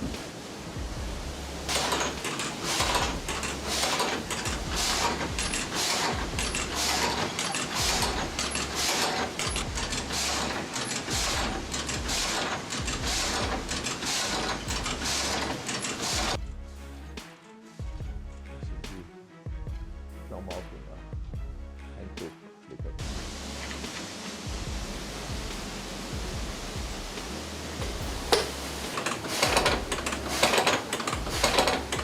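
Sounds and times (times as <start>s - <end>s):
low hum: 0.0s - 16.4s, 23.0s - 30.5s
sawmill machinery clattering: 0.0s - 16.4s, 23.0s - 32.0s.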